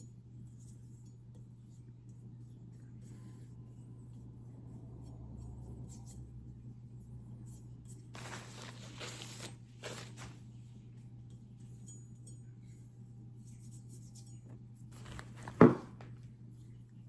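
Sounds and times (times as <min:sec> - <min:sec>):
tissue rubbing on knife blade: 0:08.2 - 0:10.4.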